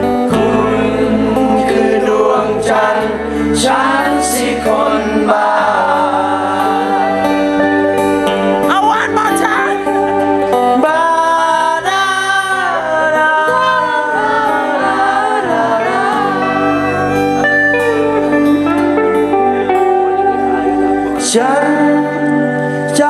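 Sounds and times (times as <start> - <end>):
person singing: 12.6 - 20.5
live band music: 15.9 - 21.2.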